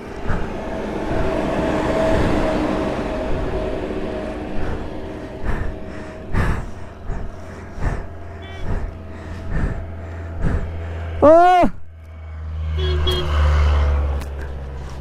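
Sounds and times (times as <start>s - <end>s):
rushing noise bursts: 0.0s - 11.4s
low rumble: 0.0s - 15.0s
motorcycle engine running: 0.0s - 15.0s.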